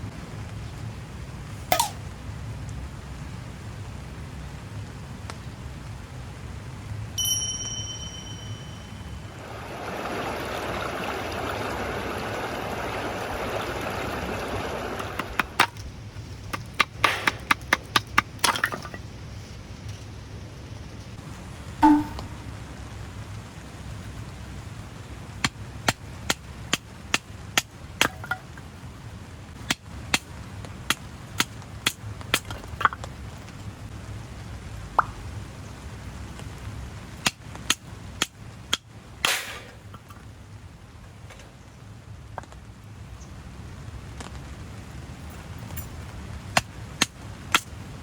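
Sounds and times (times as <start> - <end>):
sharp knocks: 16.5 - 18.5, 21.8 - 22.5.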